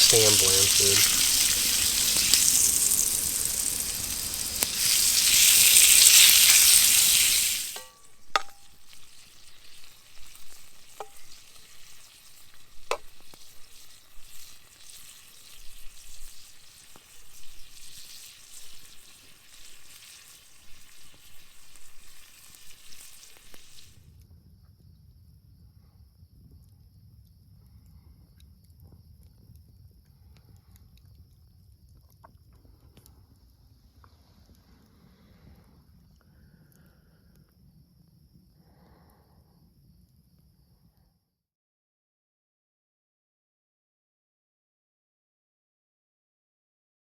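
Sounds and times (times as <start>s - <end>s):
fire crackling and popping: 0.0s - 24.0s
food sizzling over a campfire: 0.0s - 24.0s.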